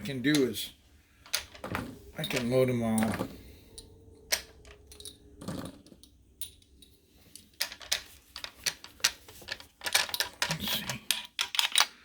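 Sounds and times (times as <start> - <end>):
cartridges clicking into rifle magazine: 11.1 - 12.0.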